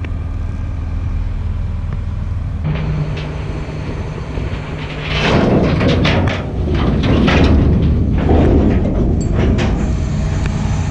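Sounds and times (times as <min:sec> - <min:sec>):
diesel engine running: 0:00.0 - 0:10.9
clanking and scraping: 0:02.6 - 0:10.9.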